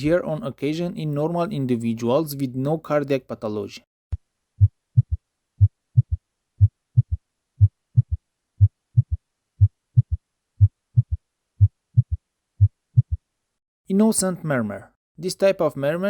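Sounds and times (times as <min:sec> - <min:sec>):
heartbeat through stethoscope: 0:04.6 - 0:13.2.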